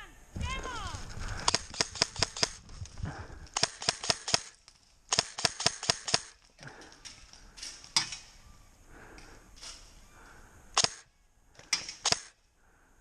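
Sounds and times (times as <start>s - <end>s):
airsoft gun shots: 1.4s - 2.6s, 3.6s - 6.4s, 10.8s - 11.1s, 11.7s - 12.4s.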